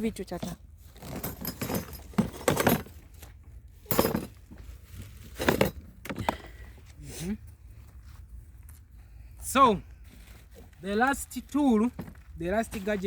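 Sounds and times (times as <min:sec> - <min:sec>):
objects clinking and clattering: 0:00.4 - 0:03.1, 0:03.8 - 0:04.5, 0:05.3 - 0:06.3.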